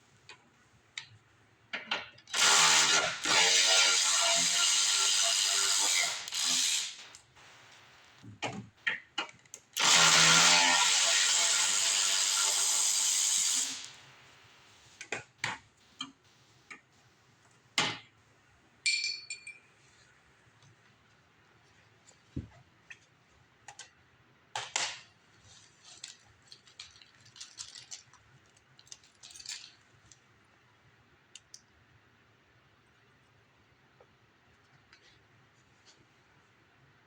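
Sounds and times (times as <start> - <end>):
cordless power driver running: 2.4 - 8.0, 9.8 - 14.4.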